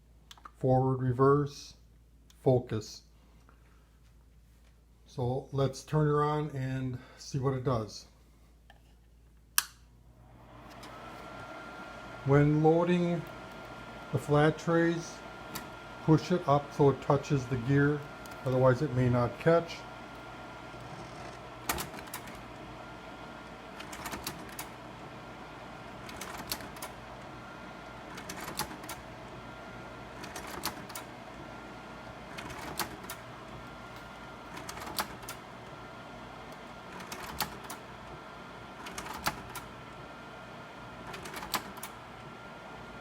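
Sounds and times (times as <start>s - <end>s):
projector cooling fan running: 9.6s - 43.0s.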